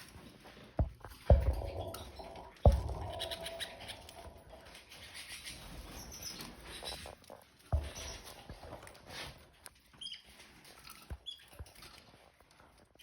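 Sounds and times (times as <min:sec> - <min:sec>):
birds scratching and pattering: 0:00.0 - 0:13.0
dull thumps in cage: 0:00.8 - 0:09.3.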